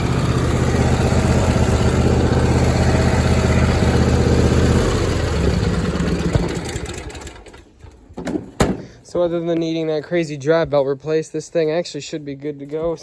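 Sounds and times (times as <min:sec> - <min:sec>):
lawn tractor engine running: 0:00.0 - 0:09.1.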